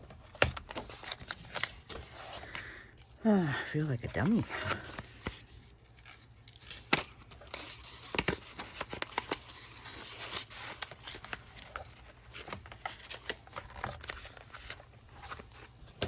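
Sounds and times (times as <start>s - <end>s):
paper sheets rustling: 4.0s - 16.0s.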